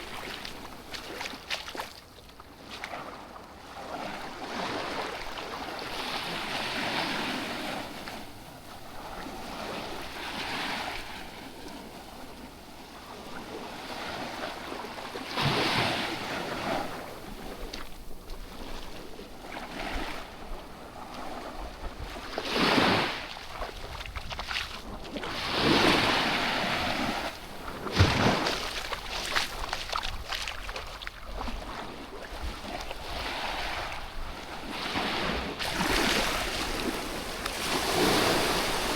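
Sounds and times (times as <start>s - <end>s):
sea waves breaking: 0.0s - 38.9s
wind on microphone: 15.4s - 38.9s.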